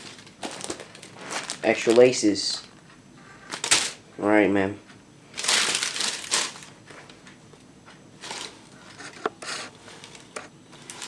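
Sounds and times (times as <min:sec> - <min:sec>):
box and packing rustling: 0:00.0 - 0:02.1, 0:05.4 - 0:07.3, 0:08.2 - 0:11.0.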